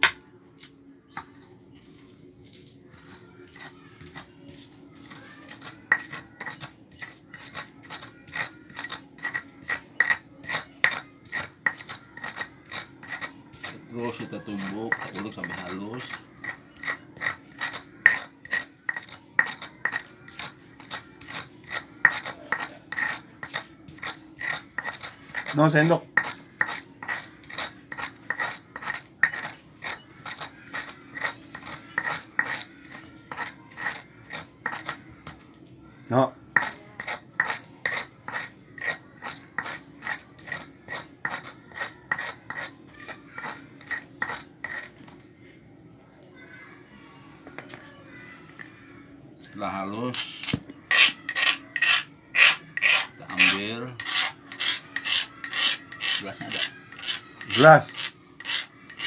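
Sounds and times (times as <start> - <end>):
pestle pounding in mortar: 2.9 - 35.4, 36.5 - 45.1, 50.2 - 59.0.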